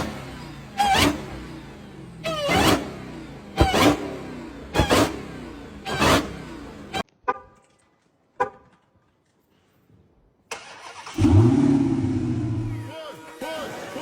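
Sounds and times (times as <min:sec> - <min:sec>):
car engine starting and running: 0:00.0 - 0:07.1, 0:10.4 - 0:12.9.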